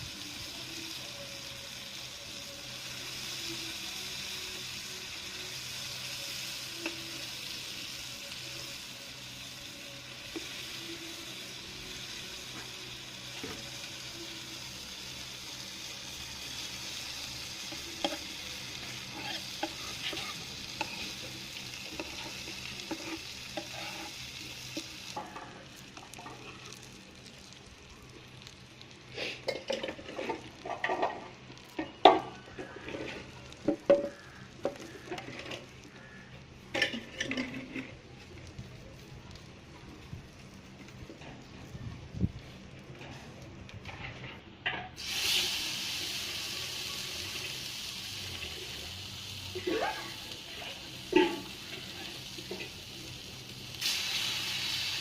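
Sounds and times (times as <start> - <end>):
fish sizzling in hot oil: 0.0 - 41.0, 45.0 - 55.0
spatula scraping and knocking pan: 19.1 - 21.2, 21.9 - 25.4.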